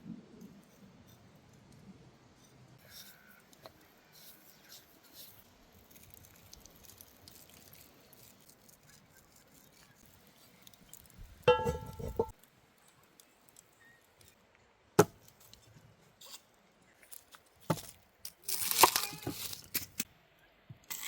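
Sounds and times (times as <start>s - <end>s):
tearing rustling sound: 4.2s - 11.4s, 16.2s - 20.1s.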